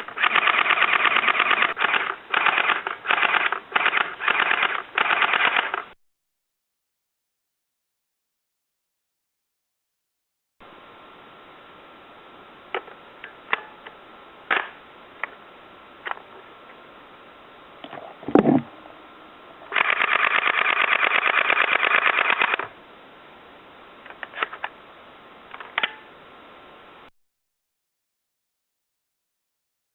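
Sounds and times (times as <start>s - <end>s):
airsoft gun full-auto rattle: 0.0s - 5.9s, 19.7s - 22.7s.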